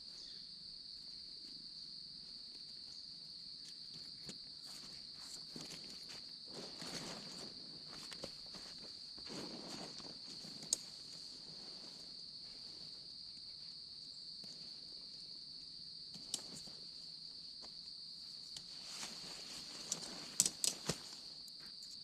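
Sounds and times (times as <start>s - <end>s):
crickets chirping: 0.0s - 22.0s
tent clips clicking: 16.1s - 16.6s, 19.7s - 21.1s.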